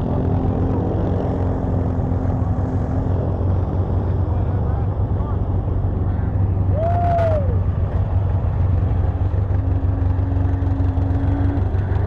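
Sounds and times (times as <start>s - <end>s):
engine low drone: 0.0s - 12.0s.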